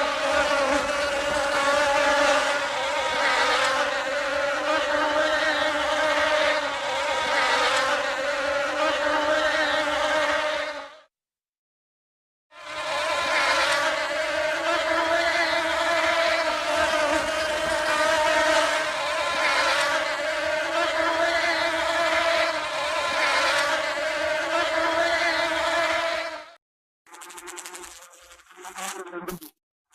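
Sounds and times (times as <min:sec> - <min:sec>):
honey bee buzzing: 0:00.0 - 0:10.9, 0:12.6 - 0:26.4, 0:27.1 - 0:29.6.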